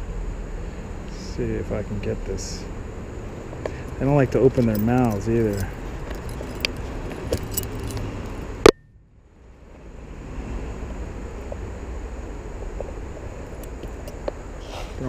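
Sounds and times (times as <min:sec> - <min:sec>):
small clicks and rattles: 0:03.6 - 0:08.6, 0:12.8 - 0:14.4.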